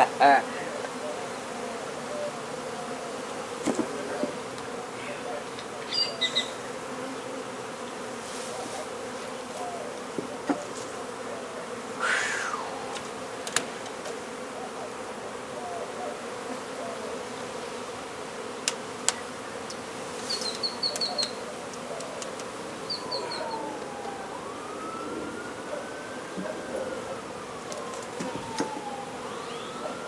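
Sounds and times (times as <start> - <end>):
honey bees buzzing: 0.0 - 30.0
sharp clicks: 12.9 - 14.0.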